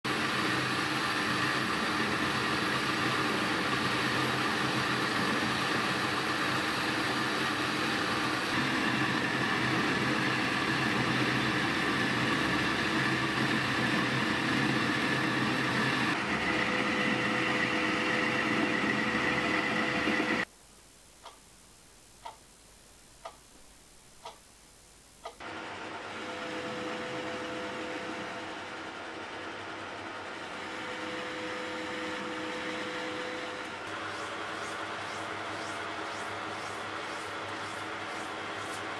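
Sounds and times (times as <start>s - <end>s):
workshop machine humming: 0.1s - 23.5s, 24.1s - 38.9s
soft ticks: 21.2s - 21.5s, 22.2s - 22.5s, 23.2s - 23.4s, 24.2s - 24.4s, 25.2s - 25.4s.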